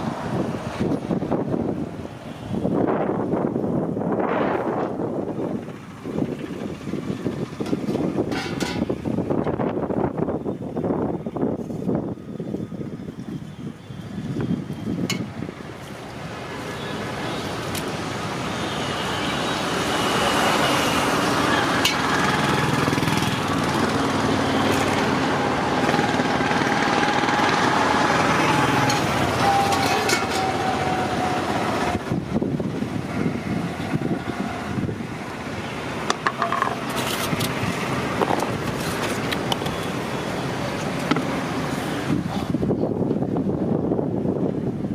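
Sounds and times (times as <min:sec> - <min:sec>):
traffic passing: 0:00.0 - 0:44.9
clinks and knocks: 0:07.7 - 0:08.9, 0:28.8 - 0:30.6, 0:36.1 - 0:37.4.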